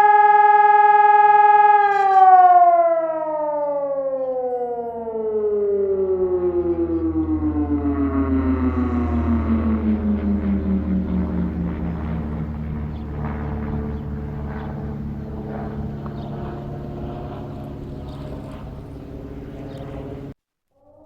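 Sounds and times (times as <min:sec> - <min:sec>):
electronic siren winding down: 0:00.0 - 0:21.0
low steady rumble: 0:06.0 - 0:20.4.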